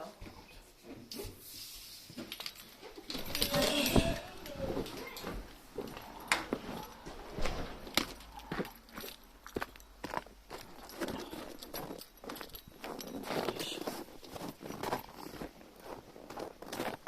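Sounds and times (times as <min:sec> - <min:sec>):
car keys jangling: 0:07.9 - 0:14.4.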